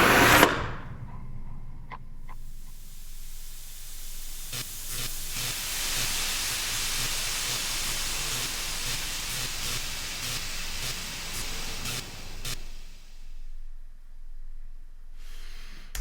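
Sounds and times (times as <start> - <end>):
rushing hiss of air: 2.4 - 13.5.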